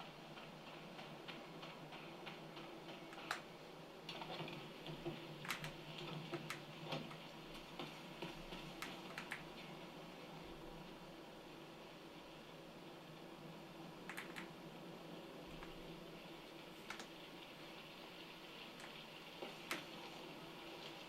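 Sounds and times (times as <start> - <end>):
mechanical keyboard keystrokes: 5.4 - 7.1, 8.8 - 9.4, 14.1 - 14.5, 16.9 - 17.1.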